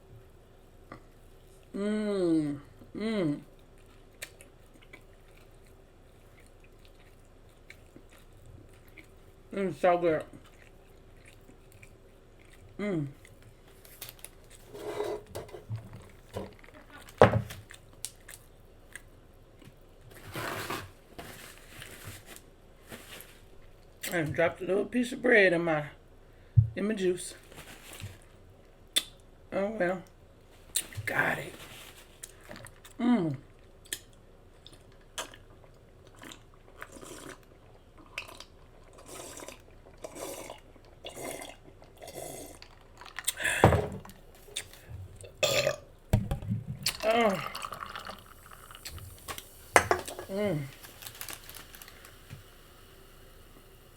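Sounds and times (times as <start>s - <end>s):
chewing and lip smacking: 3.5s - 9.5s, 10.2s - 14.6s, 16.0s - 19.8s, 32.2s - 43.4s, 44.4s - 45.3s
loud burp: 45.4s - 45.9s.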